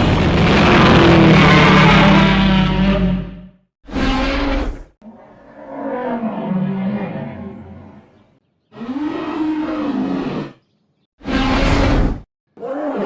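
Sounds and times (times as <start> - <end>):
monster roars: 0.0 - 3.5.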